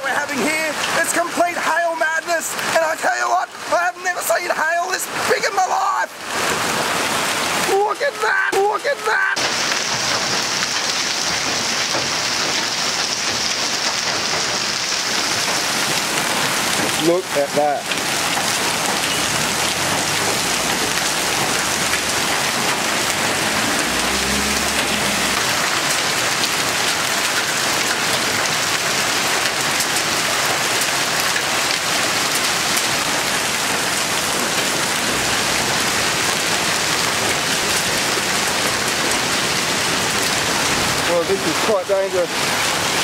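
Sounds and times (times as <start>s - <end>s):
hail and rain pelting down: 0.0s - 43.0s
low rumble: 20.3s - 25.8s.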